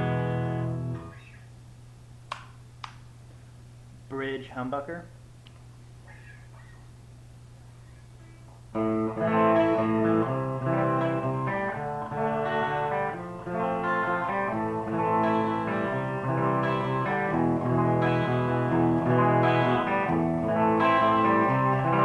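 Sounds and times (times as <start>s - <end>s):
electric guitar picked chords: 0.0s - 1.2s, 8.7s - 22.0s.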